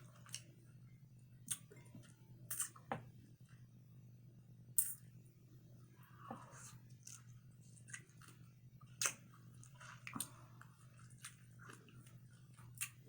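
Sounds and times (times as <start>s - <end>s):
low steady hum: 0.0s - 13.0s
chewing and wet mouth sounds: 1.4s - 2.8s, 6.5s - 13.0s.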